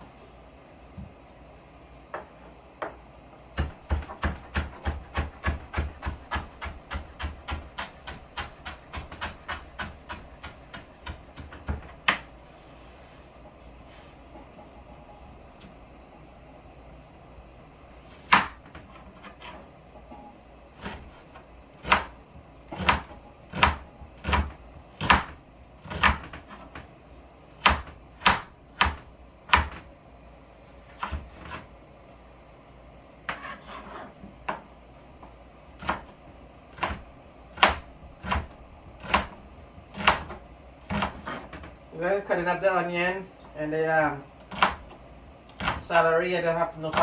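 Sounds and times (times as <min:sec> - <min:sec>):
knife chopping on cutting board: 0:03.6 - 0:12.3, 0:18.1 - 0:19.6, 0:20.8 - 0:26.9, 0:27.6 - 0:29.9, 0:30.9 - 0:31.7, 0:33.3 - 0:34.6, 0:35.8 - 0:41.7, 0:44.4 - 0:45.9.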